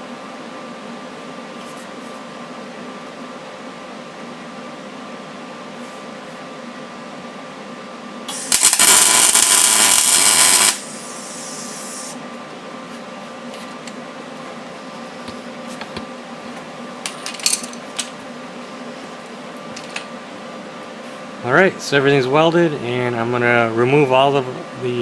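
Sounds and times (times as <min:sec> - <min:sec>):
welder crackling: 0:08.3 - 0:12.2.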